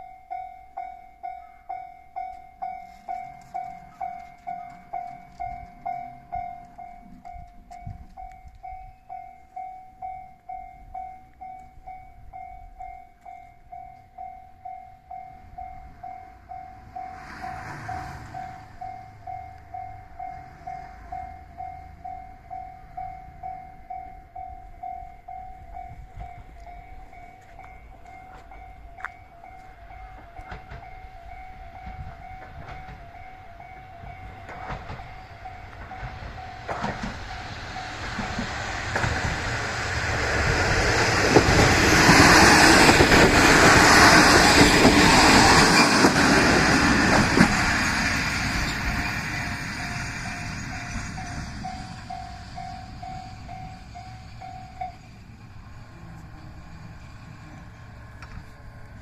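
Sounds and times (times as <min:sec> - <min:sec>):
level crossing bell dinging: 0:00.0 - 0:36.8
train rumble and rail noise: 0:00.0 - 0:59.0.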